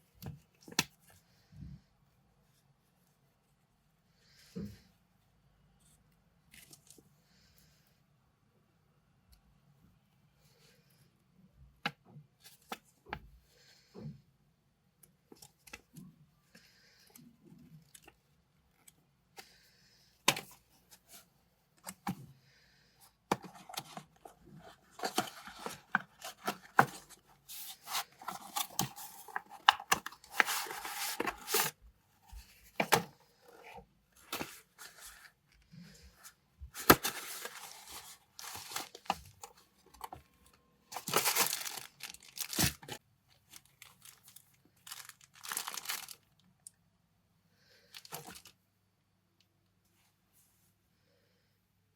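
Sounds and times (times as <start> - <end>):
packaging crinkling and tearing: 41.0 - 46.4.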